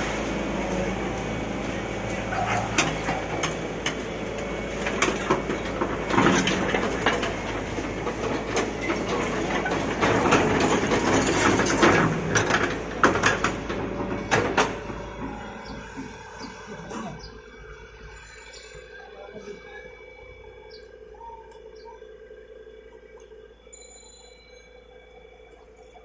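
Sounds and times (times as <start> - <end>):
excavator diesel engine running: 0.0 - 26.0
clanks and knocks: 1.1 - 16.6.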